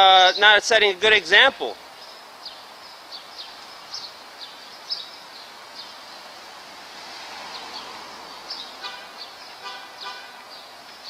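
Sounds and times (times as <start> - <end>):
street noise hiss: 0.0 - 11.0
small birds chirping: 0.2 - 6.6, 7.3 - 11.0.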